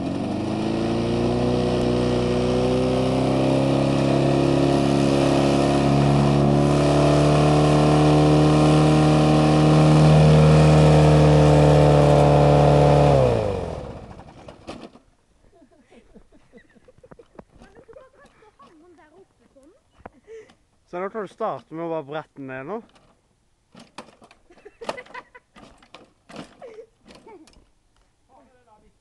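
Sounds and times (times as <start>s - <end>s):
lawnmower engine running: 0.0s - 15.1s.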